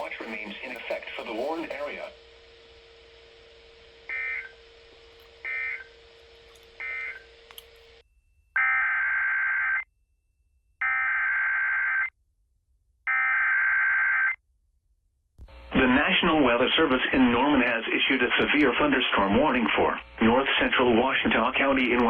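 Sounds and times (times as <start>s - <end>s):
faint steady hum: 0.0s - 8.5s, 15.4s - 22.0s.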